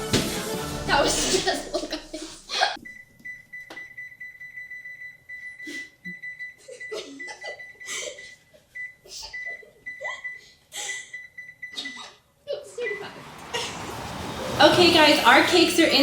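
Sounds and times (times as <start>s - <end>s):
kitchen alarm beeping: 2.8s - 10.4s, 11.1s - 11.8s.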